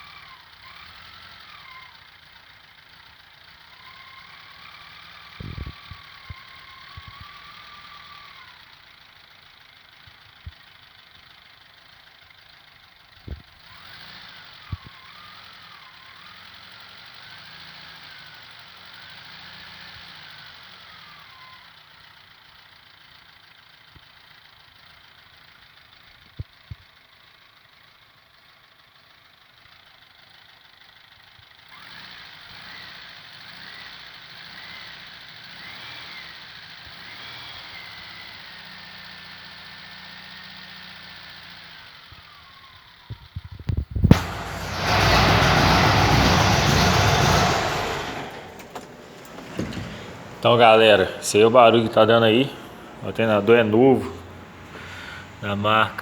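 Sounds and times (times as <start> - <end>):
car engine idling: 0.0 - 56.0
alternator whine: 44.0 - 56.0
sharp knocks: 44.1 - 50.5.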